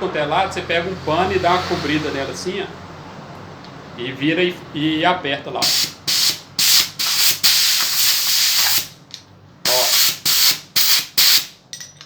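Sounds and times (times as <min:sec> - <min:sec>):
compressed air blow gun blasts: 0:05.6 - 0:09.0, 0:09.7 - 0:11.5.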